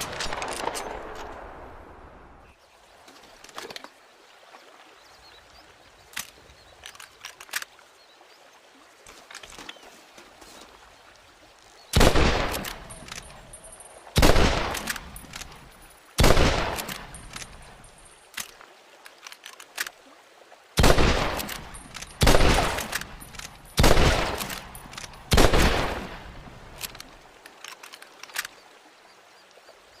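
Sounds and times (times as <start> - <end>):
small clicks: 6.1 - 7.8, 12.5 - 13.9, 18.3 - 20.0, 24.3 - 25.3, 26.8 - 28.6
rifle shots: 12.0 - 13.0, 14.2 - 15.0, 16.2 - 17.2, 20.8 - 23.1, 23.8 - 26.2.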